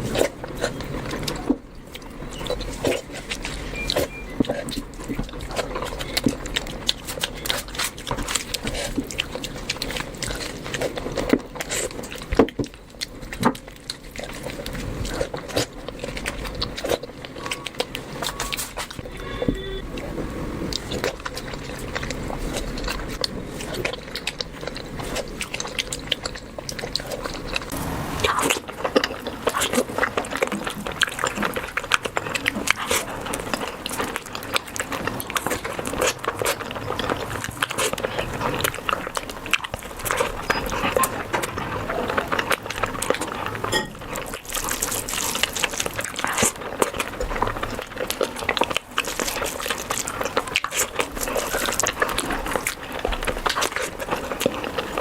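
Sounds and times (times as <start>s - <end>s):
wet chewing and smacking: 0.0s - 55.0s.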